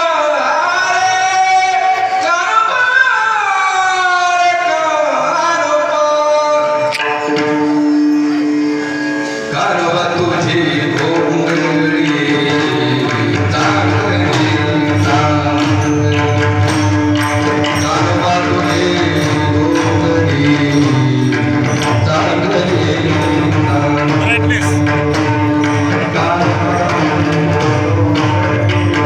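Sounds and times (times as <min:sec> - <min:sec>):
devotional music ensemble: 0:00.0 - 0:29.0.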